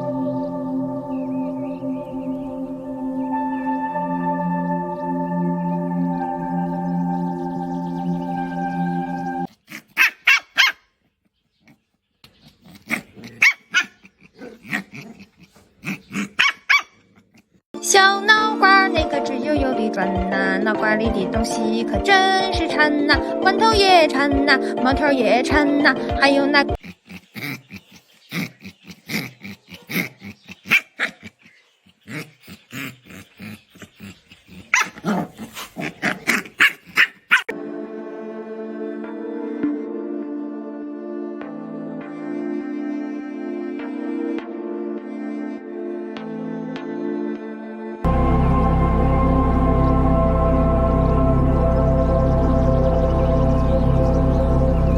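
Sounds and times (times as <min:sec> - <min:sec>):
calm music: 0:00.0 - 0:09.5, 0:17.8 - 0:26.8, 0:37.5 - 0:54.9
small dog yapping: 0:09.7 - 0:10.8, 0:12.6 - 0:17.0, 0:26.8 - 0:37.5.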